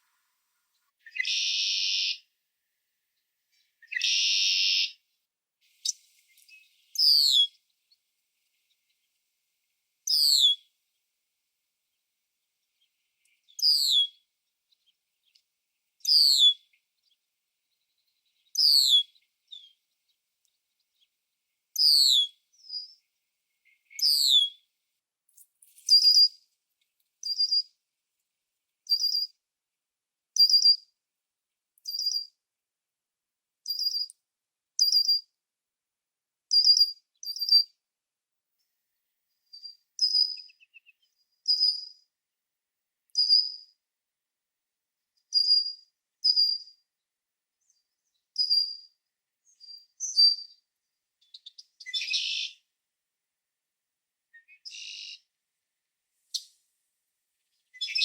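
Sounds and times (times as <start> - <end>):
blackbird calling: 1.0 - 2.2, 3.6 - 5.0, 51.4 - 52.6, 54.4 - 55.2.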